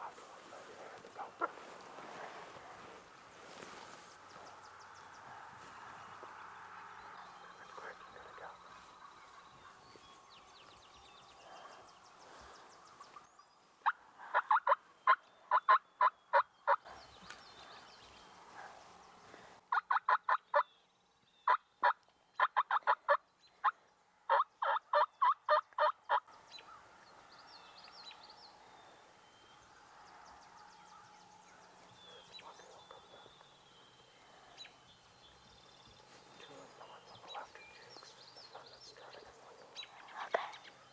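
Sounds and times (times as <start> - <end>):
turkey yelping: 0.0 - 2.4, 14.3 - 16.8, 19.7 - 20.6, 21.5 - 23.1, 24.3 - 26.2.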